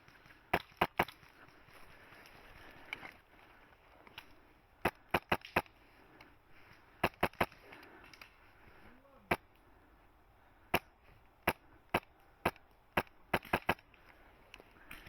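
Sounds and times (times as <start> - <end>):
airsoft gun firing single shots: 4.8 - 5.8, 7.0 - 7.6, 10.7 - 13.9.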